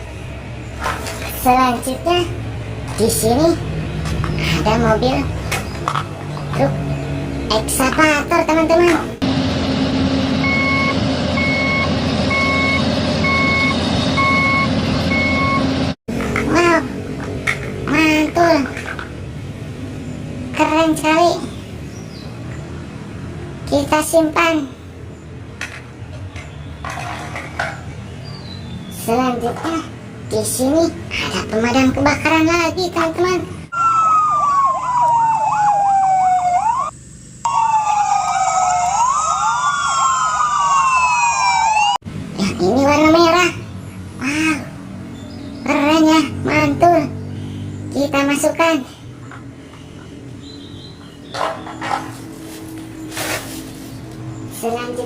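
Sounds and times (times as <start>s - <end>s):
heavy vehicle engine: 0.0s - 23.8s, 40.5s - 54.8s
electronic fire engine siren: 9.2s - 16.0s, 33.7s - 42.0s
reversing alarm beeping: 10.2s - 16.0s, 33.7s - 42.0s.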